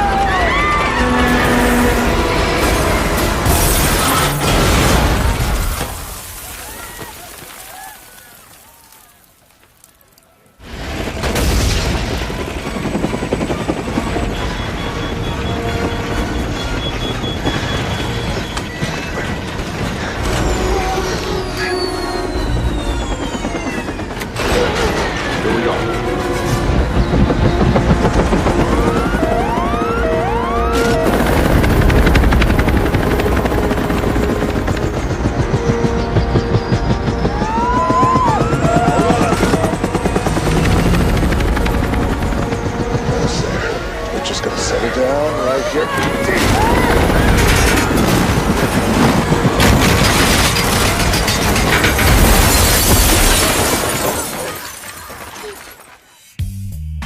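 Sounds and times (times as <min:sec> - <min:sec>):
helicopter rotor chopping: 0:00.0 - 0:05.7, 0:10.6 - 0:53.3
debris crashing and shattering: 0:00.0 - 0:21.9, 0:45.9 - 0:56.2
music: 0:13.6 - 0:52.5, 0:56.3 - 0:57.0
rising whooping tones: 0:25.8 - 0:32.4.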